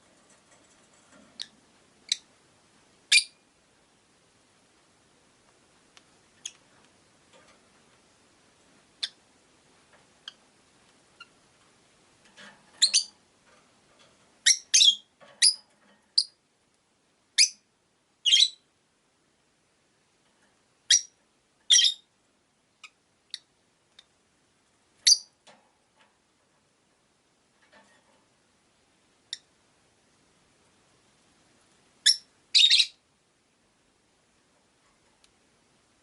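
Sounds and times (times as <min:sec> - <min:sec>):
lovebirds chirping: 0:01.4 - 0:02.3, 0:03.1 - 0:03.4, 0:09.0 - 0:09.2, 0:12.8 - 0:13.1, 0:14.4 - 0:16.4, 0:18.2 - 0:18.7, 0:20.9 - 0:22.1, 0:25.0 - 0:25.4, 0:32.0 - 0:33.0.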